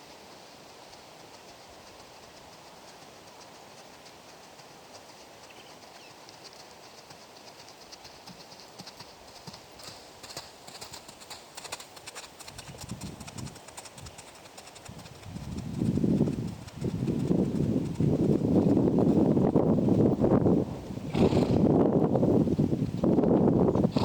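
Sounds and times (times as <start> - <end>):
horse hooves clip-clopping: 0.0 - 24.0
wind hiss: 0.0 - 24.0
wind rumble on microphone: 12.4 - 24.0.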